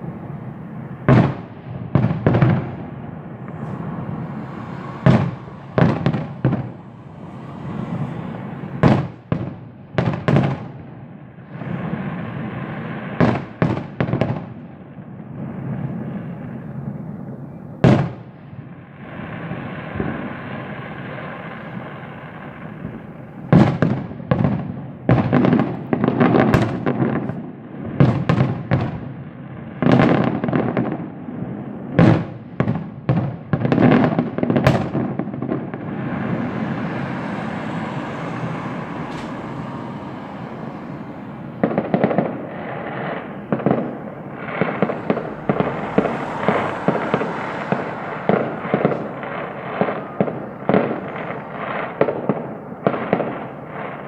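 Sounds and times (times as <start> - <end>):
fireworks banging: 0.0 - 54.0
fireworks hissing: 0.6 - 10.6, 34.0 - 51.8.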